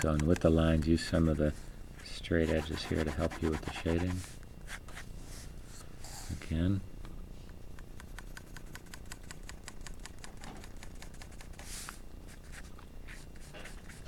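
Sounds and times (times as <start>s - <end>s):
pencil shading on paper: 2.4s - 4.2s.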